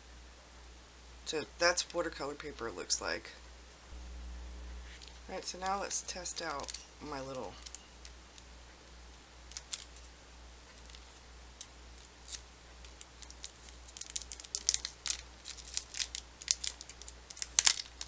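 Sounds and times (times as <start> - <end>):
art supplies clicking and tapping: 12.8 - 18.0.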